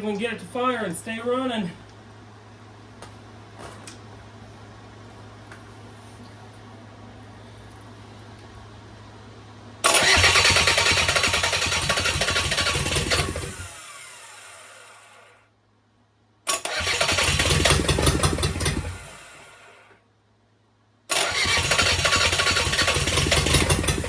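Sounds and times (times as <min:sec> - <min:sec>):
diesel engine cranking: 0:09.8 - 0:14.6, 0:16.5 - 0:19.7, 0:21.1 - 0:24.0.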